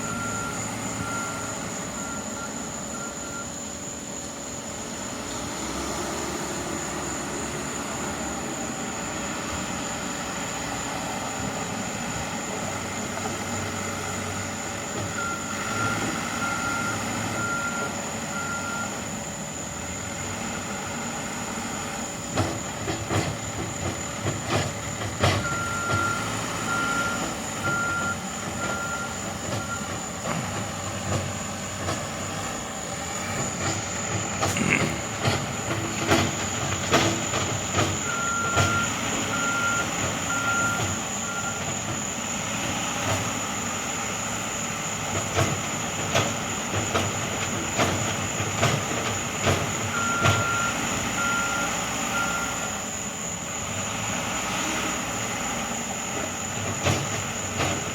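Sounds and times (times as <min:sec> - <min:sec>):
working machinery noise: 0:00.0 - 0:57.9
clanks and knocks: 0:22.3 - 0:26.1, 0:33.4 - 0:38.9.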